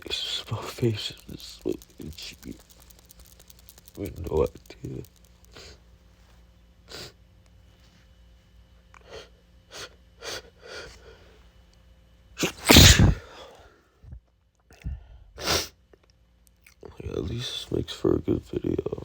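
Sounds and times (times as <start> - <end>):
man sneezing: 12.4 - 13.4.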